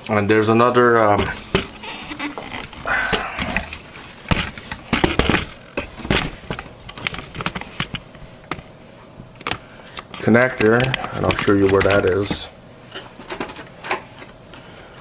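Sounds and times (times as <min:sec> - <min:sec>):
computer parts clicking and scraping: 0:09.4 - 0:14.0.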